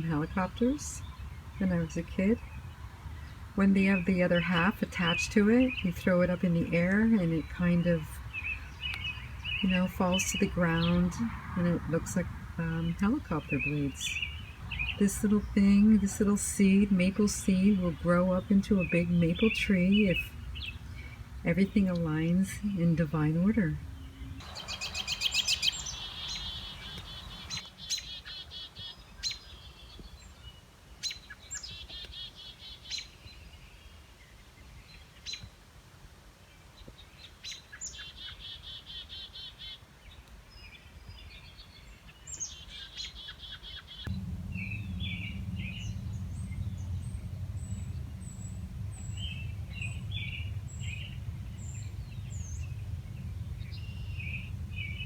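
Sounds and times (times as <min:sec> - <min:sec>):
songbird trilling: 0:04.4 - 0:11.3, 0:12.0 - 0:28.4, 0:43.3 - 0:55.0
bird chirps: 0:12.6 - 0:16.3, 0:23.9 - 0:29.7, 0:42.3 - 0:55.0
low rumble: 0:44.1 - 0:55.0.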